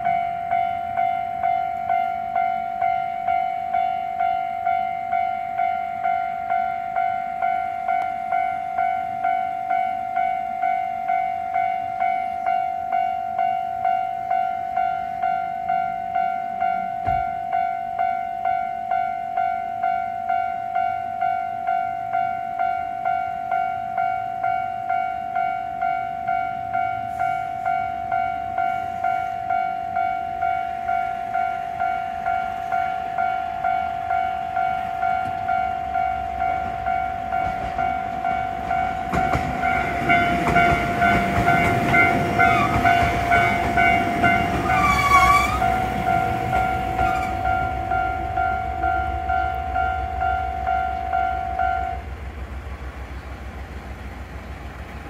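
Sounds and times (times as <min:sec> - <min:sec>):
level-crossing alarm ringing: 0:00.0 - 0:52.1
train rumble and wheel noise: 0:00.0 - 0:55.0
train horn blast: 0:39.2 - 0:48.1.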